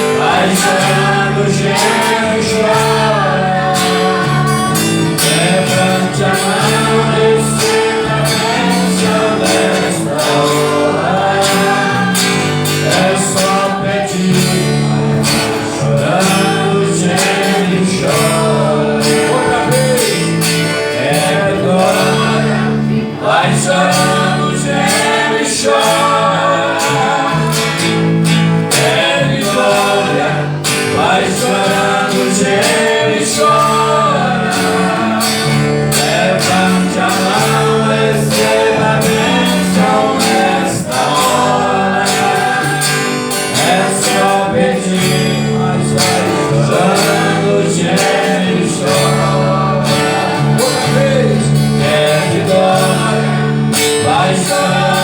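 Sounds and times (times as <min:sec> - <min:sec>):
person singing: 0:00.0 - 0:27.8
bass line: 0:00.0 - 0:55.0
guitar: 0:00.0 - 0:55.0.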